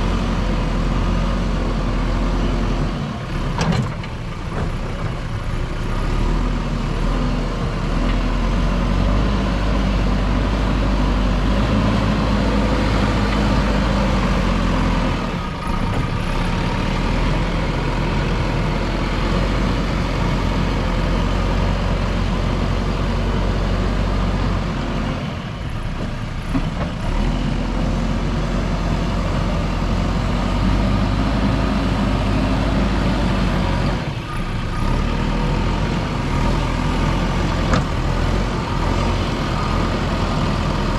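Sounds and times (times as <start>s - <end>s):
diesel engine running: 0.0s - 40.9s.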